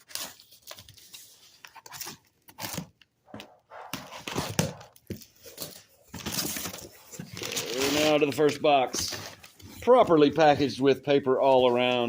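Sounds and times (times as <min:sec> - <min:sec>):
packing paper rustling: 0:00.0 - 0:03.0, 0:04.0 - 0:10.0.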